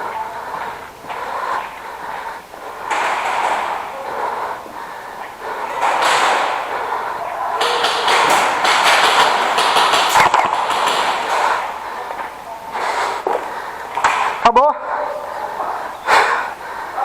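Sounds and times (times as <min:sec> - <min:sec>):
airsoft guns firing bursts: 0:02.6 - 0:14.5.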